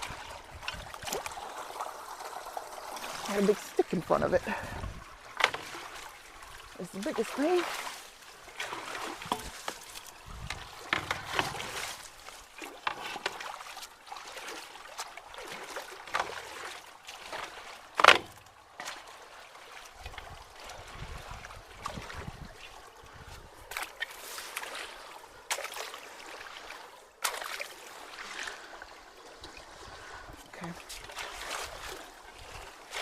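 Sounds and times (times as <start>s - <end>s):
water splashing and sloshing: 0.0s - 33.0s
faint water trickle: 0.1s - 11.3s, 27.9s - 32.9s.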